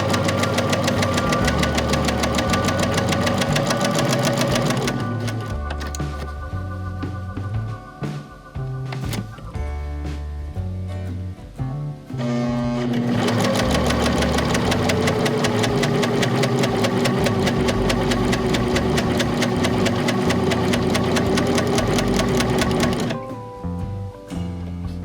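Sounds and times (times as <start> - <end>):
overlock sewing machine rattling: 0.0 - 5.5, 13.0 - 23.2.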